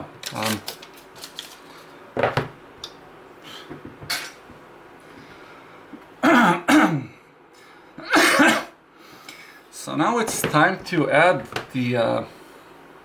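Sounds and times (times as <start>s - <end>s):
faint handling sounds: 0.2s - 2.0s
man coughing: 6.2s - 7.2s, 8.0s - 8.8s.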